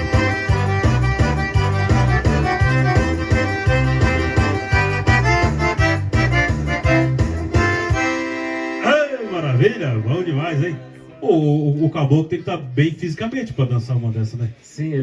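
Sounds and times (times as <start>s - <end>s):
pulsing bass beat: 0.0s - 8.2s
accordion dance tune: 0.0s - 11.4s.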